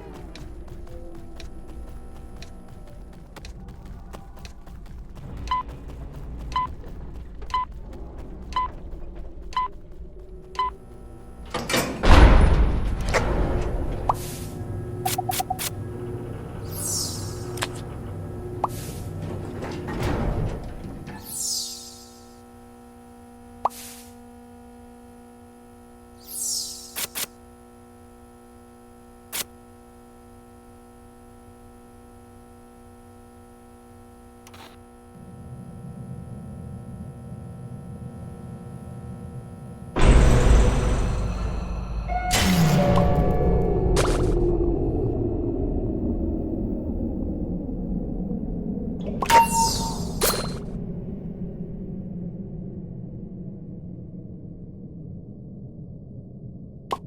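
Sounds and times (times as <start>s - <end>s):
steady hum of held tones: 8.5s - 57.0s
short electronic beeps: 15.1s - 15.7s, 49.2s - 50.5s.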